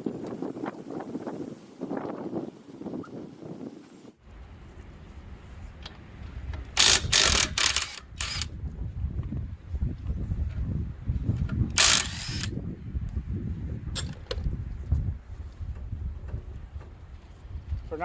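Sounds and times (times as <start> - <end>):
wind rumble: 0.0 - 18.0
impact wrench bursts: 6.7 - 8.5, 11.8 - 12.5.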